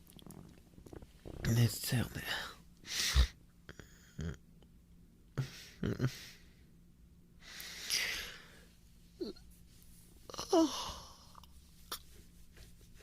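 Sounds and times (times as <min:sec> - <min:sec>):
man murmuring: 0:05.4 - 0:06.4
man breathing: 0:07.4 - 0:08.8
man sighing: 0:10.3 - 0:11.3.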